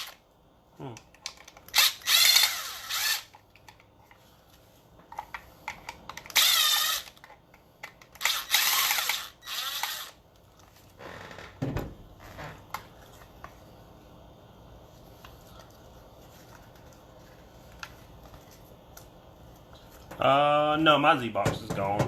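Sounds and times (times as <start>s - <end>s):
small power tool whining: 1.7s - 3.3s, 6.3s - 7.2s, 8.2s - 10.2s.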